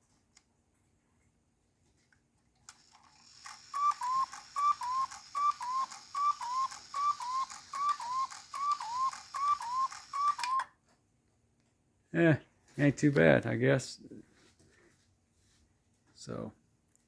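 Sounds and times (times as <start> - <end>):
cuckoo clock calling: 2.7 - 10.8
clock striking train hissing: 3.3 - 10.6.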